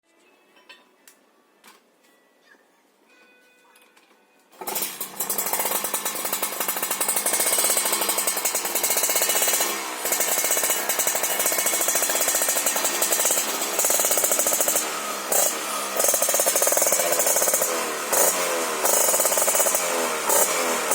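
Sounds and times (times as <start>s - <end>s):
motorcycle engine revving: 4.6s - 20.9s.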